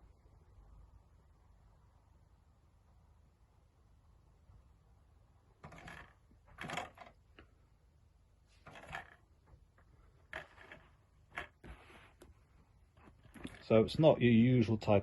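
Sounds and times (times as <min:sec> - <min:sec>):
metal tin case scrapes and clicks: 0:05.6 - 0:07.1, 0:08.6 - 0:09.2, 0:10.3 - 0:11.7.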